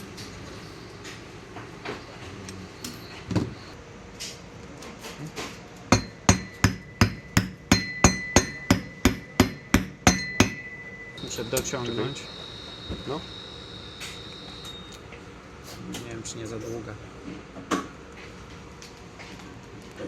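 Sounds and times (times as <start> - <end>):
hammer tapping metal: 5.9 - 11.7.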